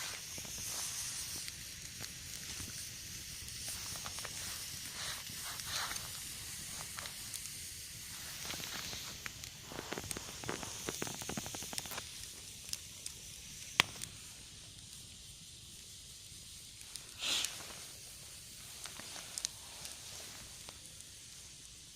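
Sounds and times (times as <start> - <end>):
campfire hissing and crackling: 0.0 - 21.9
loud fire pop: 13.7 - 14.2.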